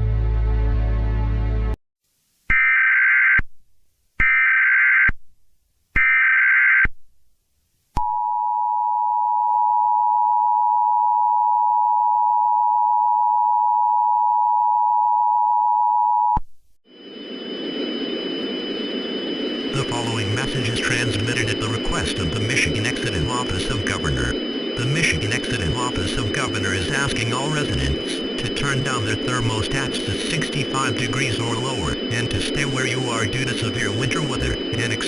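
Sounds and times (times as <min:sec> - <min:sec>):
digital data bursts: 0:19.4 - 0:35.0.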